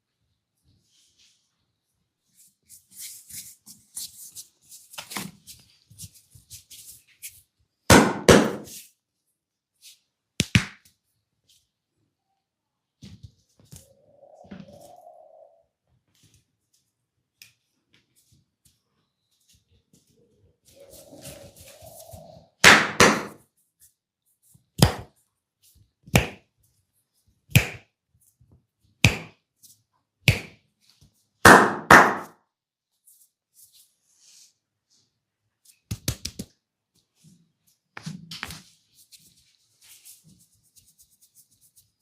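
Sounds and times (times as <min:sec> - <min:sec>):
hands slapping skin: 0:10.4 - 0:10.9, 0:24.8 - 0:25.1, 0:26.1 - 0:26.4, 0:27.5 - 0:27.8, 0:29.0 - 0:29.4, 0:30.3 - 0:30.6, 0:35.9 - 0:36.6.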